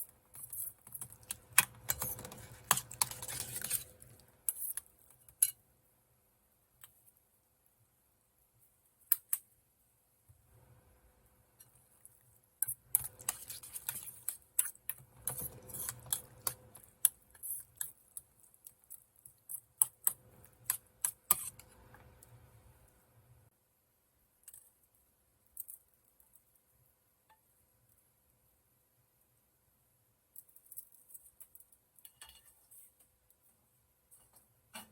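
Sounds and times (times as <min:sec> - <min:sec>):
kitchen utensils clicking and tapping: 0:00.3 - 0:05.6, 0:12.6 - 0:18.3.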